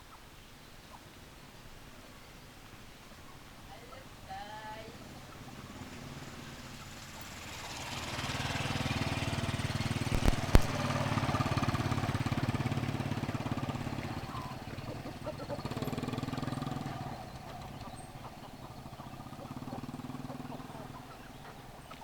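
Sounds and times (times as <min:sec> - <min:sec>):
small engine running: 0:04.9 - 0:22.0
sharp clicks: 0:10.0 - 0:11.4.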